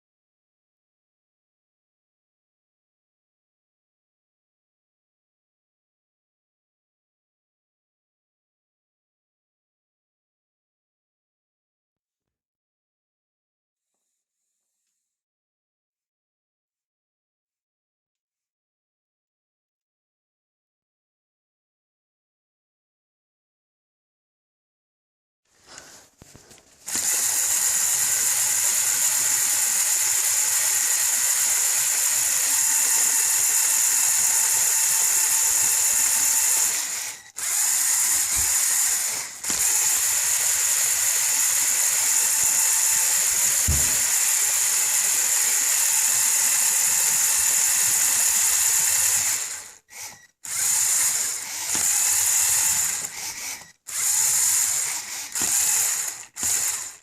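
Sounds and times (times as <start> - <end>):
electric motor high-pitched whine: 26.9 - 57.0.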